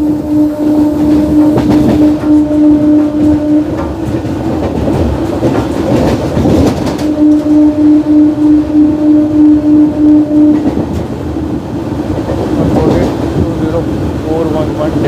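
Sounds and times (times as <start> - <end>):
train horn honking: 0.0 - 5.5, 6.6 - 11.0
train wheels clattering: 0.0 - 8.6, 9.9 - 15.0.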